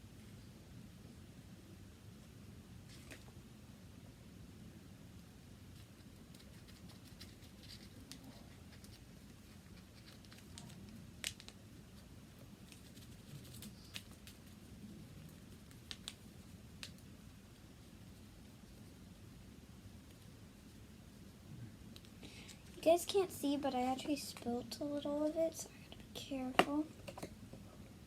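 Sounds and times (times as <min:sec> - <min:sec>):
faint clicks and light taps: 0:15.2 - 0:17.1, 0:21.9 - 0:22.8, 0:24.0 - 0:27.7.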